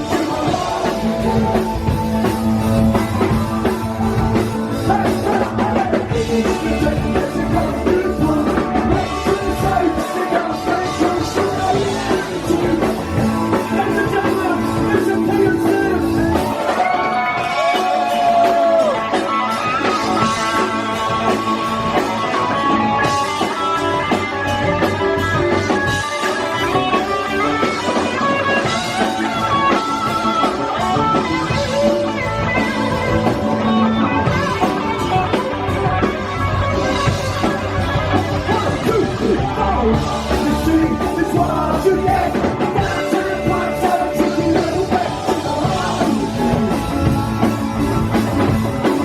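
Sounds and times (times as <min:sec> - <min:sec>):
person singing: 0:00.0 - 0:19.0, 0:37.9 - 0:49.0
bass guitar: 0:00.0 - 0:49.0
drums: 0:00.0 - 0:49.0
electric guitar: 0:00.0 - 0:49.0.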